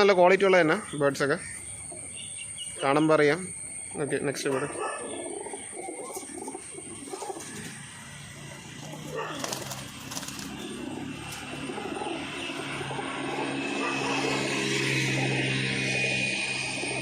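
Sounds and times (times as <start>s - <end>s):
pigeons cooing: 0.0s - 17.0s
wing flutters: 5.4s - 17.0s.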